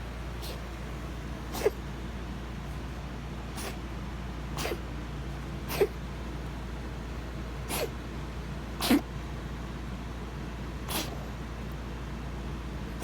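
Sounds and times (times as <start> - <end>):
short sharp coughs: 1.4 - 1.9, 3.6 - 3.8, 4.6 - 4.8, 5.7 - 6.0, 7.7 - 7.9, 8.8 - 9.0, 10.9 - 11.2.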